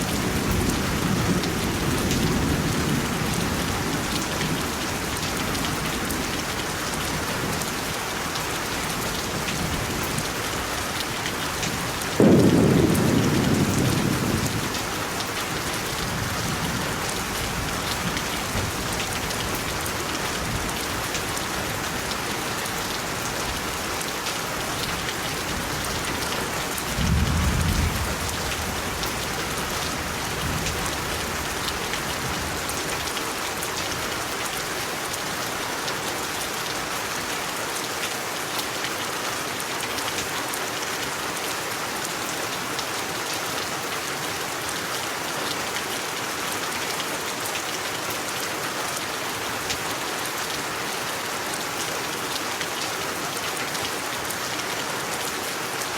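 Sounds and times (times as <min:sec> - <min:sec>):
steady rain: 0:00.0 - 0:55.9
thunder rumbling: 0:12.1 - 0:19.2, 0:26.9 - 0:31.5.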